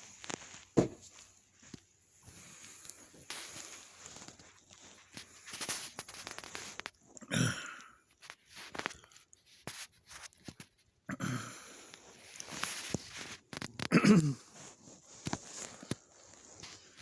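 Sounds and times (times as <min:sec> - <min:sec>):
clicks and rustles of movement: 0:00.0 - 0:07.3, 0:08.0 - 0:11.0, 0:11.9 - 0:17.0
person coughing: 0:07.2 - 0:07.9, 0:11.1 - 0:11.7, 0:13.9 - 0:14.4.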